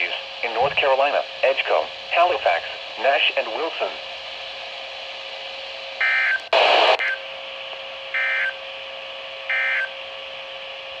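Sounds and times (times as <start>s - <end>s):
loud burst of static: 6.5s - 7.0s.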